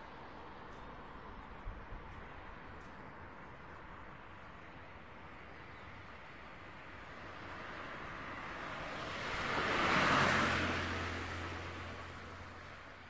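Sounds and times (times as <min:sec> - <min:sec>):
street traffic: 0:00.0 - 0:13.0
vehicle passing close by: 0:08.1 - 0:12.7.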